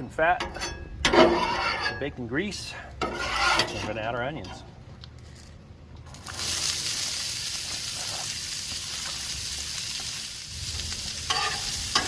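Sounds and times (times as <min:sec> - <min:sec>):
onions sizzling on a griddle: 0:06.1 - 0:12.0.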